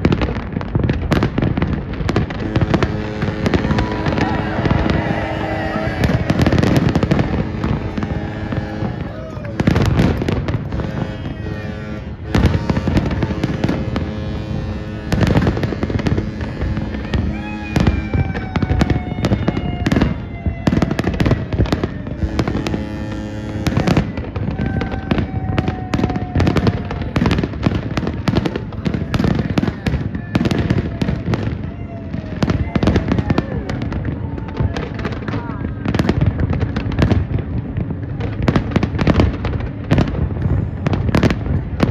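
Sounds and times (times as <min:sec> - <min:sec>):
fireworks bangs and crackles: 0:00.0 - 0:41.9
deep steady tones: 0:02.3 - 0:17.4.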